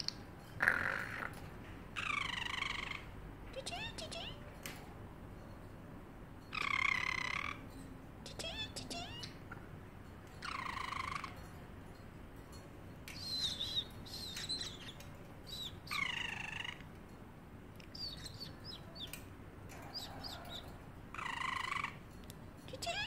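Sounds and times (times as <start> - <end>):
bird chirps and warbles: 0.0 - 4.4, 6.4 - 17.2, 17.8 - 23.0
parrot calling: 2.0 - 4.4, 6.5 - 7.7, 10.4 - 11.4, 13.2 - 17.0, 17.8 - 22.0.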